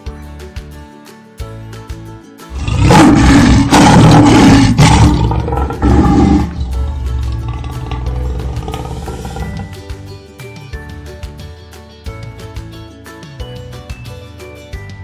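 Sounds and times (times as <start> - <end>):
big cat roaring: 2.6 - 9.8
soft plucked music: 5.3 - 15.0.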